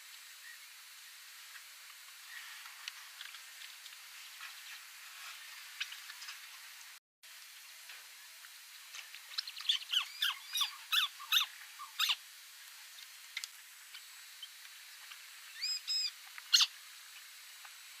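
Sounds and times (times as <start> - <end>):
crake calling sharp sweeping calls: 9.3 - 12.2, 15.4 - 17.4.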